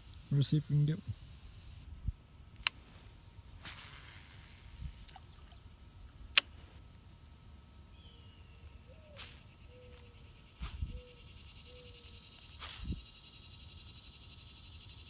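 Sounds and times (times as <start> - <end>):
insects trilling: 0.0 - 15.0
fishing line hissing out: 2.9 - 5.7, 9.0 - 9.6, 11.6 - 13.3.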